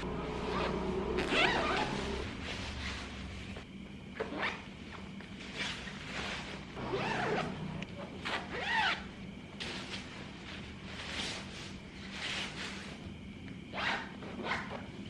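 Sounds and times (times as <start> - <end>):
zipper pulled: 0.2 - 3.6, 5.5 - 9.8, 13.7 - 14.9.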